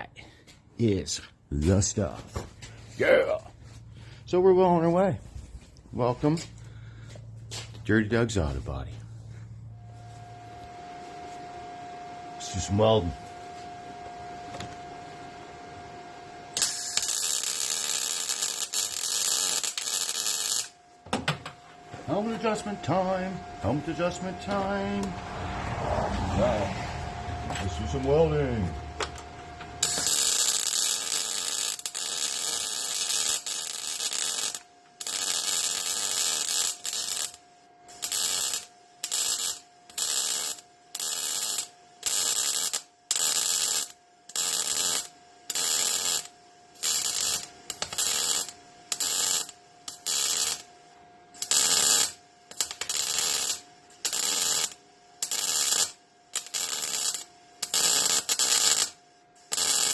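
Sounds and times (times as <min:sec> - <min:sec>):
welder electrical hum: 0:00.0 - 0:59.9
welding arc crackling: 0:16.5 - 0:20.8, 0:27.6 - 0:50.7, 0:51.4 - 0:59.9.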